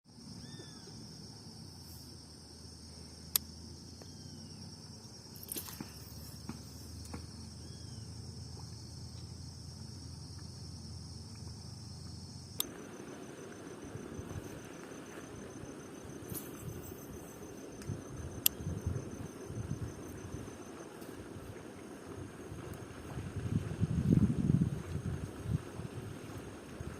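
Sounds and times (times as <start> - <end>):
insect rapid pulsing: 0.1 - 26.9
insects trilling: 0.1 - 26.9
sharp clicks: 12.6 - 12.8, 17.8 - 18.9.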